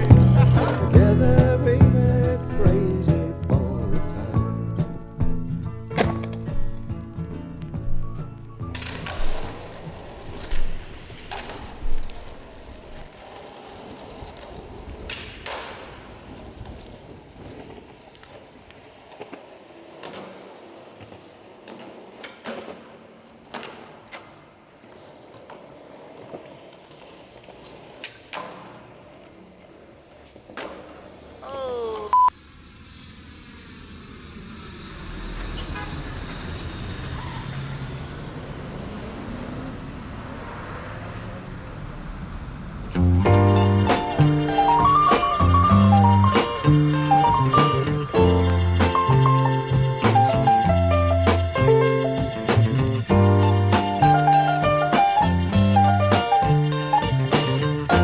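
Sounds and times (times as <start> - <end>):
skateboard clacks and thuds: 0.0 - 31.4, 42.9 - 58.0
road noise rumble: 0.0 - 58.0
skateboard wheels rolling on pavement: 0.0 - 58.0
loud single beep: 32.1 - 32.3.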